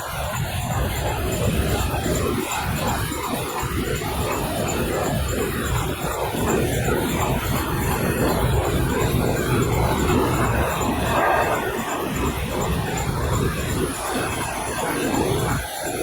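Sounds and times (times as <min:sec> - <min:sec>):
machine running: 0:08.0 - 0:14.0.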